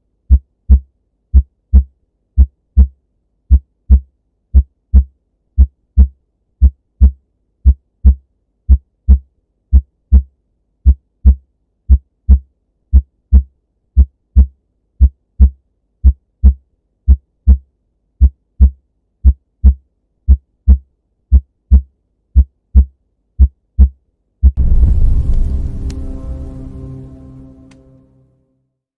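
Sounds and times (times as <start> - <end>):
heartbeat thumps: 0.3 - 10.3, 10.9 - 17.6, 18.2 - 25.7
loud music: 24.6 - 28.4.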